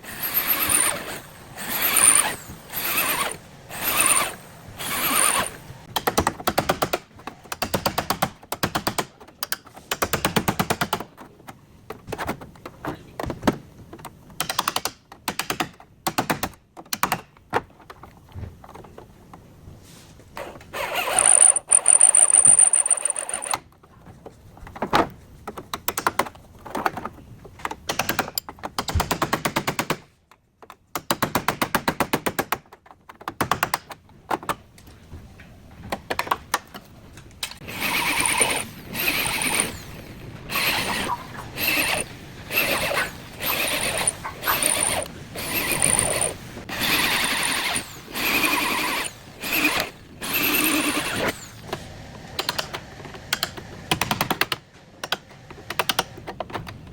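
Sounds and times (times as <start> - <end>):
short mechanical bursts: 0.0 - 5.9, 20.4 - 23.6, 37.6 - 51.7.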